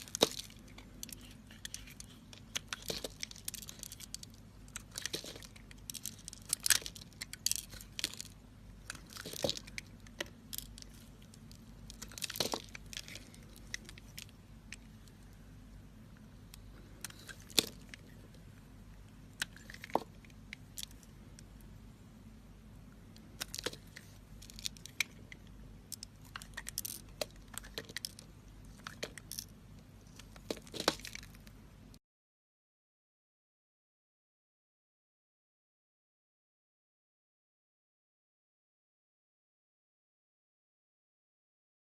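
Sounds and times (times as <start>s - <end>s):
faint low hum: 0.0s - 32.0s.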